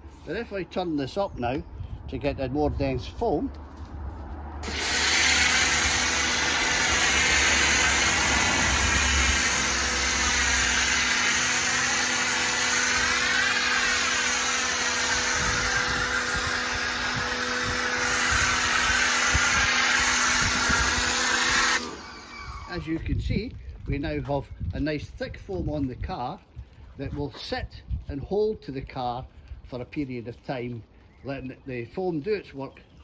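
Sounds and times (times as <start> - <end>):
loud hissing foam spray: 4.6 - 22.0
pressure washer motor hum: 4.6 - 22.8.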